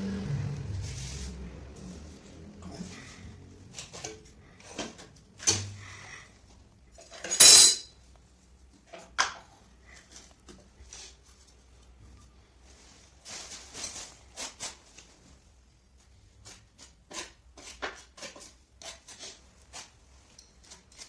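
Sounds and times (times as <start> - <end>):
hard objects clinking and knocking: 7.2 - 7.9.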